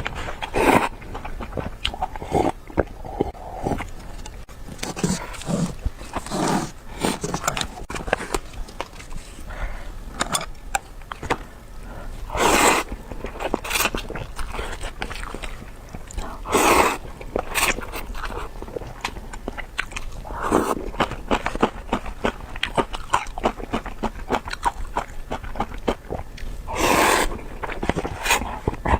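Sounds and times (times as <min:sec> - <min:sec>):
wet chewing: 0:00.0 - 0:28.9
noodle slurps: 0:04.8 - 0:10.5, 0:11.2 - 0:22.0, 0:26.1 - 0:28.9.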